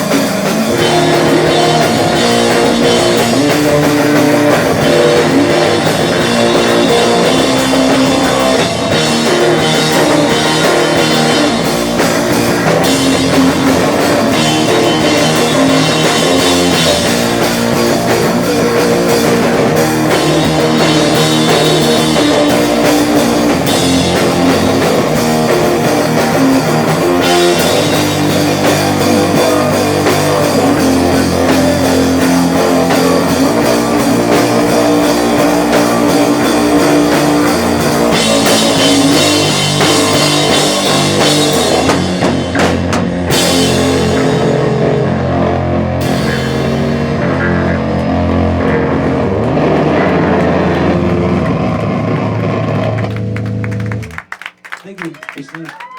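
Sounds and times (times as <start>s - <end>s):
live rock band playing: 0.0s - 55.8s.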